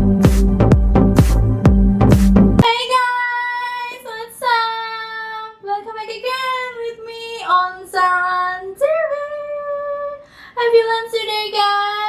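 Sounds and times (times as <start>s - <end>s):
electronic music: 0.0s - 2.6s
woman singing unaccompanied: 2.6s - 12.0s.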